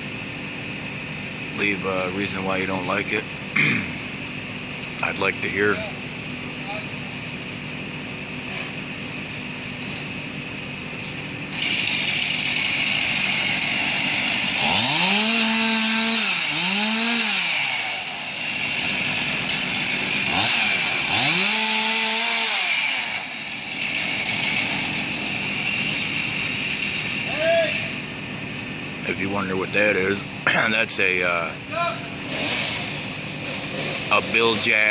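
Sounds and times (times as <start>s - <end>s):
chainsaw engine revving: 11.5s - 28.2s, 32.1s - 34.9s.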